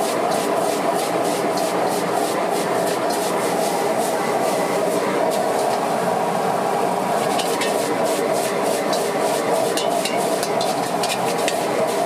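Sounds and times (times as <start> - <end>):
gas burner rushing: 0.0 - 12.0
food sizzling: 0.3 - 5.8, 7.2 - 12.0
metal spatula scraping a wok: 7.2 - 12.0.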